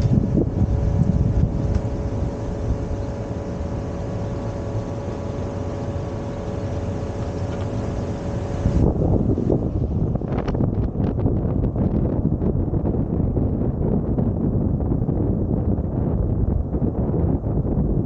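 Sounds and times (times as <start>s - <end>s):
faint steady hum: 0.0s - 18.0s
wind buffeting microphone: 0.0s - 18.0s.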